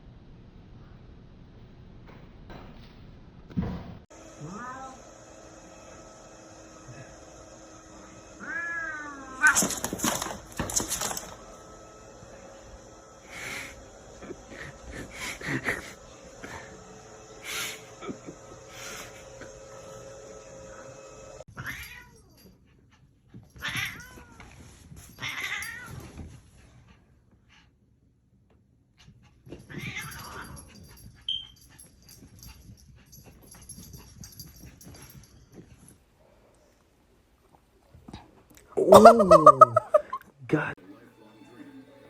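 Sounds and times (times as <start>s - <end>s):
cats meowing and yowling: 8.4s - 9.8s, 21.6s - 22.3s, 23.6s - 24.5s, 25.1s - 26.0s, 29.7s - 30.6s.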